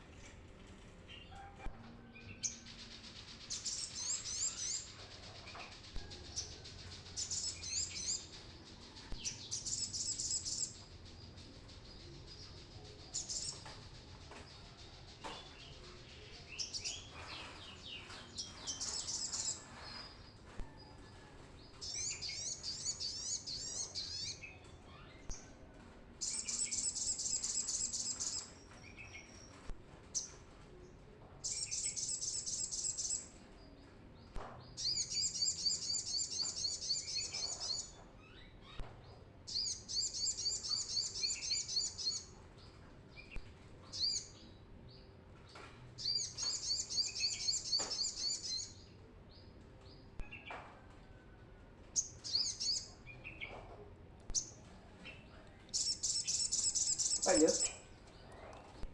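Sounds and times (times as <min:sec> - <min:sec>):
bird singing trilled phrases: 0:55.7 - 0:57.9.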